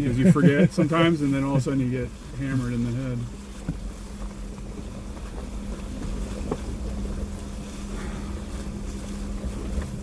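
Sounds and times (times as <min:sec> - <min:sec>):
car engine running: 0:00.0 - 0:10.0
vehicle knocks and rattles: 0:02.7 - 0:10.0.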